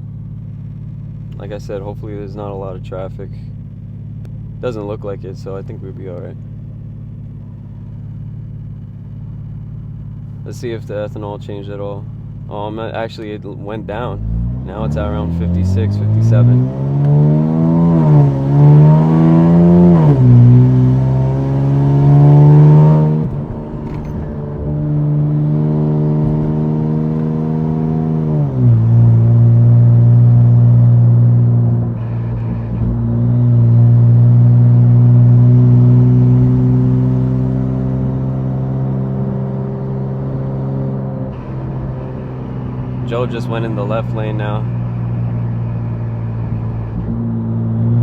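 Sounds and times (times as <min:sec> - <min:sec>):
car engine accelerating through gears: 0:13.2 - 0:48.0.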